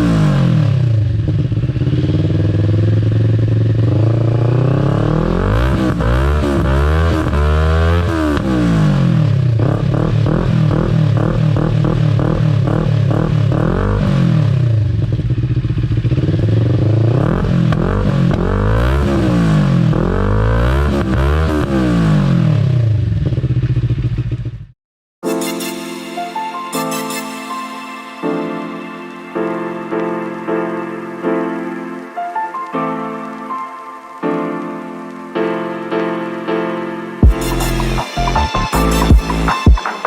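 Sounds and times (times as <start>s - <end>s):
motorcycle engine revving: 0.0s - 24.8s
music: 25.2s - 40.0s.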